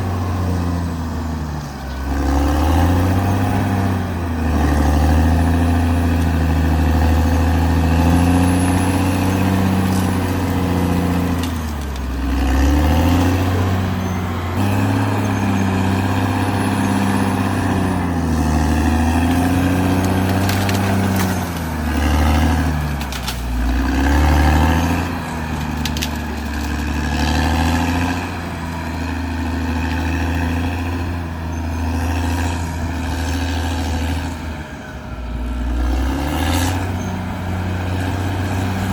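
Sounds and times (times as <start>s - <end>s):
bulldozer diesel engine under load: 0.0s - 38.9s.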